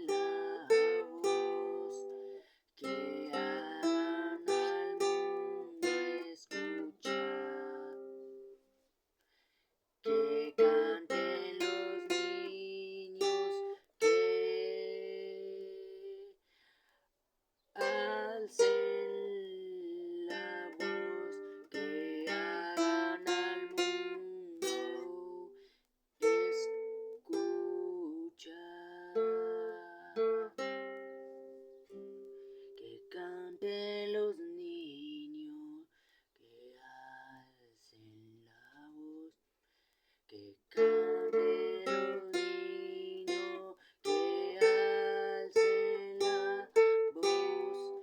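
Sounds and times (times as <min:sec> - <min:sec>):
plucked string instrument melody: 0:00.0 - 0:08.6, 0:10.1 - 0:14.4, 0:20.2 - 0:25.3, 0:26.2 - 0:27.9, 0:29.1 - 0:32.7, 0:40.8 - 0:48.0.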